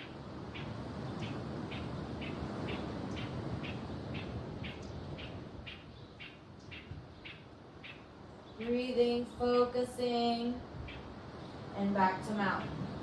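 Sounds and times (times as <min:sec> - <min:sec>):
bird chirping: 0:00.0 - 0:08.8.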